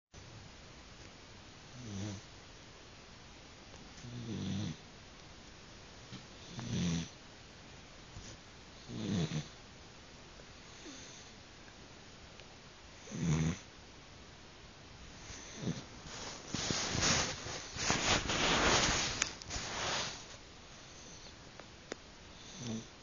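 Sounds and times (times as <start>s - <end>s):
dog snoring: 1.7s - 2.3s, 4.0s - 4.8s, 6.4s - 7.2s, 8.2s - 9.6s, 10.7s - 11.3s, 13.0s - 13.7s, 15.2s - 21.3s, 22.3s - 23.0s.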